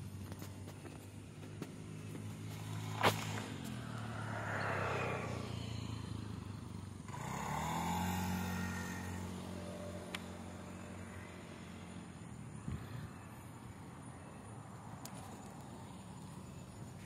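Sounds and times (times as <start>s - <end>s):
vehicle engine passing by: 1.8s - 13.2s.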